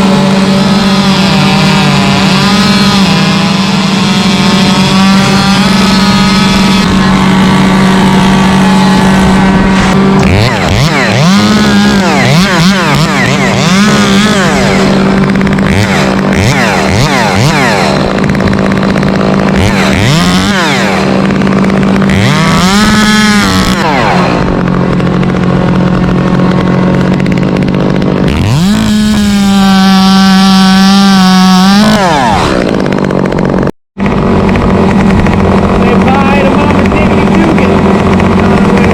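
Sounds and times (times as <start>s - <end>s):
chainsaw revving: 0.0s - 38.9s
second engine running: 0.0s - 38.9s.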